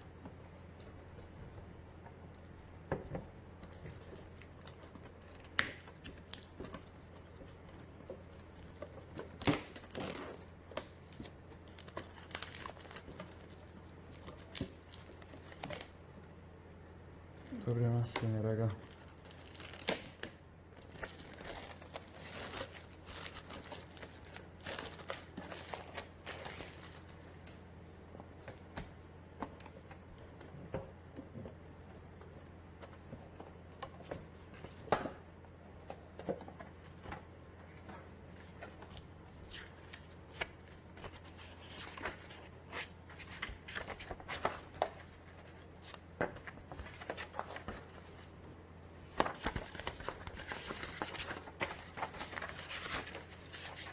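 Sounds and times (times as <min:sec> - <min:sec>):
wrapping crinkling and tearing: 0:03.6 - 0:16.0, 0:17.4 - 0:27.6, 0:49.1 - 0:53.9
cardboard and paper rustling: 0:17.6 - 0:27.6, 0:28.2 - 0:53.9.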